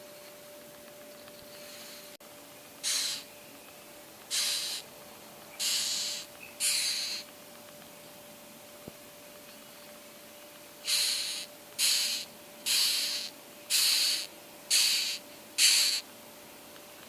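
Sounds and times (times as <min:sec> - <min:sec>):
beetle stridulating hissing rasps: 0:02.8 - 0:03.3, 0:04.3 - 0:04.9, 0:05.6 - 0:07.3, 0:10.8 - 0:16.1.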